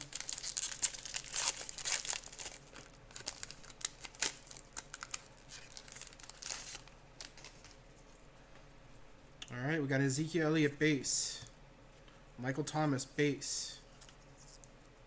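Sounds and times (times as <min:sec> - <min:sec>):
foil wrapper crinkling: 0:00.0 - 0:07.8.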